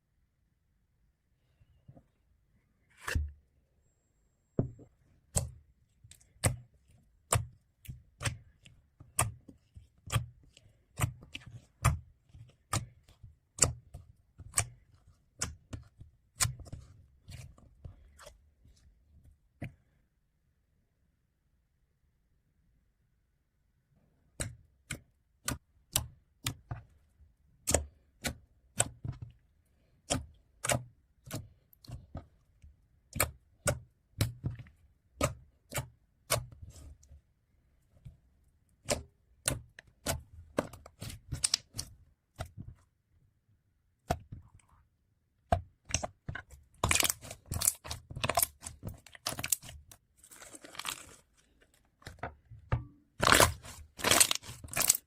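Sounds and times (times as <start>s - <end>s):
slime crackling: 45.9s - 52.2s, 53.1s - 55.0s.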